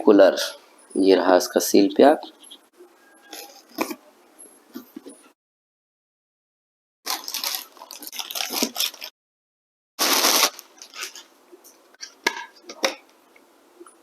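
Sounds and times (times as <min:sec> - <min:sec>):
cardboard and plastic rustling: 0:07.1 - 0:09.1, 0:10.0 - 0:11.3.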